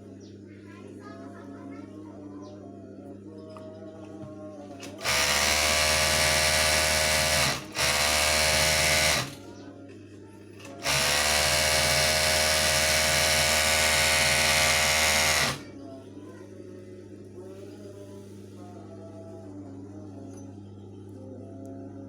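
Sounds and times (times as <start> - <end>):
sewing machine running: 4.8 - 9.4, 10.6 - 15.7.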